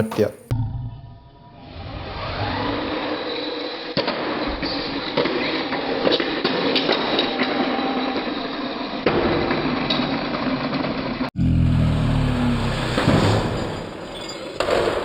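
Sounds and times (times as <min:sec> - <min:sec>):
car engine revving: 0:11.4 - 0:14.2.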